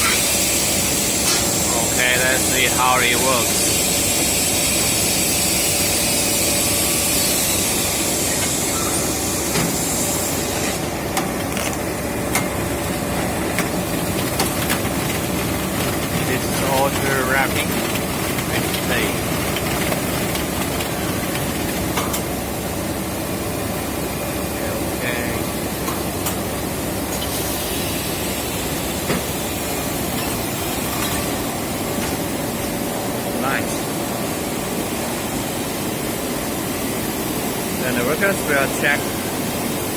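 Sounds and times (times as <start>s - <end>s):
high machine whine: 0.0s - 39.9s
machine hum and hiss: 0.0s - 39.9s
cable coiling machine din: 7.8s - 22.6s.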